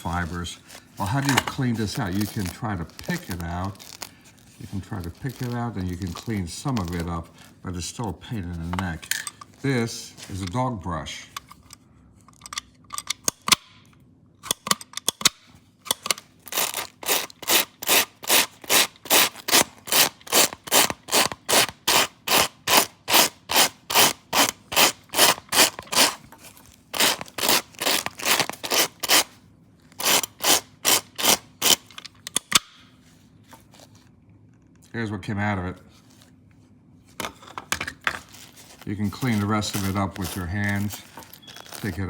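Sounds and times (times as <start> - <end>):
brush scraping velcro: 0.0 - 10.6, 16.4 - 32.0, 33.1 - 34.1, 38.1 - 42.0.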